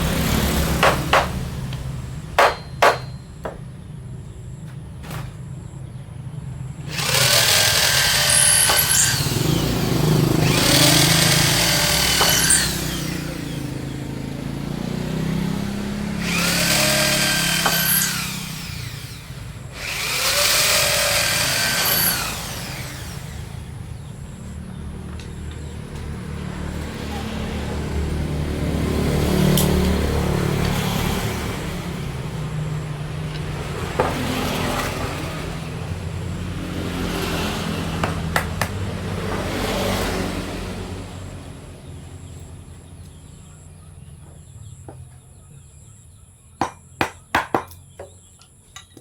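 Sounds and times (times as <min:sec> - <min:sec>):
power tool cutting wood: 0:00.0 - 0:03.6, 0:06.8 - 0:24.0.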